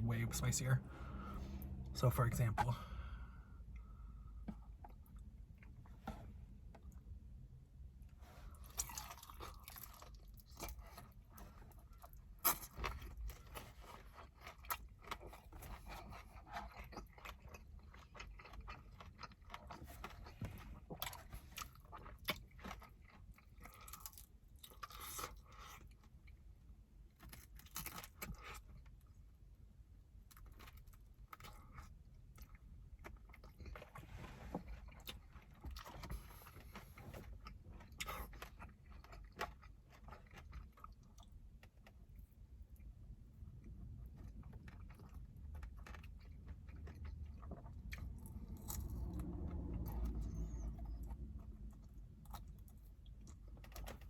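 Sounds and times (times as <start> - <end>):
chewing and biting chicken wings: 8.6 - 26.5, 34.8 - 54.0.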